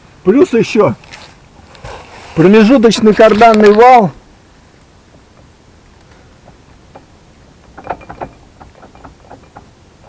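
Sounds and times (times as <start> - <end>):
metallic clicks and clunks of driveshaft: 6.5 - 9.8.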